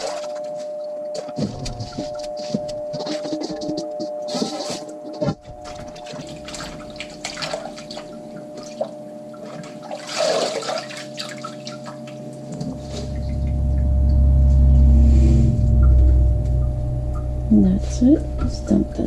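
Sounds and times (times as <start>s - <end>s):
water splashing in a sink: 5.4s - 13.8s
low rumble: 12.6s - 19.0s.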